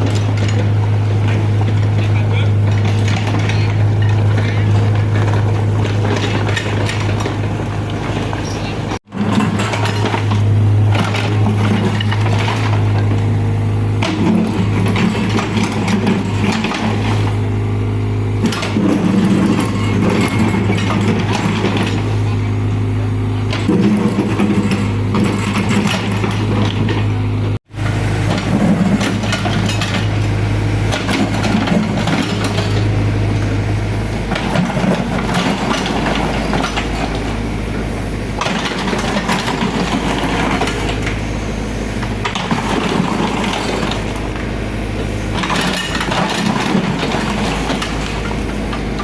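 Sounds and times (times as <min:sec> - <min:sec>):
excavator diesel engine running: 0:00.0 - 0:49.0.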